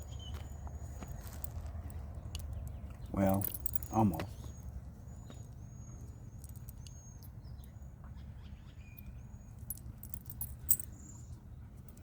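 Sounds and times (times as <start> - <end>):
low steady rumble: 0.0 - 12.0
metallic jingling and clicks: 1.0 - 7.7, 9.0 - 12.0
small bird chirping: 2.1 - 9.8.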